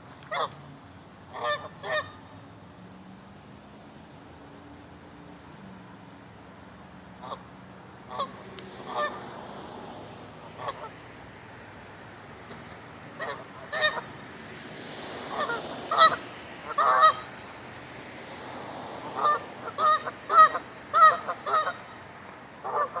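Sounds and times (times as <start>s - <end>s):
geese honking: 0.3s - 0.6s, 1.3s - 2.2s, 7.2s - 7.4s, 8.1s - 11.1s, 12.4s - 17.8s, 18.4s - 23.0s.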